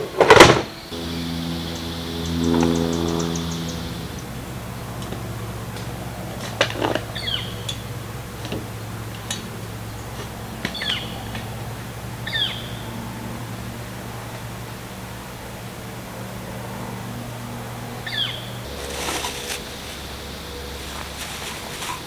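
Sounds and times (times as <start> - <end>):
bird chirping: 0.7 - 4.4
steady low hum: 0.8 - 22.0.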